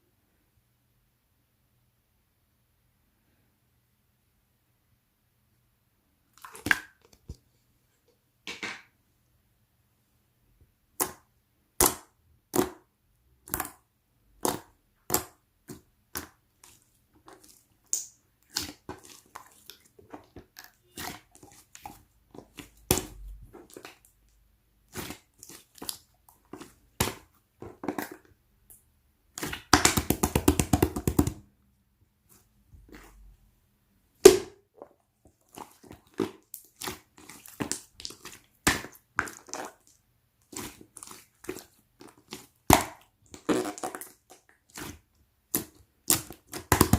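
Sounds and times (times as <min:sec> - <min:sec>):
slime with beads crackling: 0:14.4 - 0:28.2, 0:35.3 - 0:46.9.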